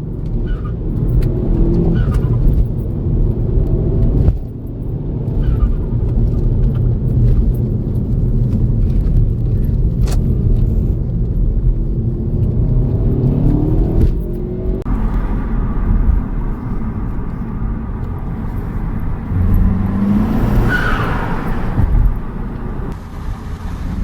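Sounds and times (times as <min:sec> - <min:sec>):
car engine revving: 0:12.0 - 0:24.0.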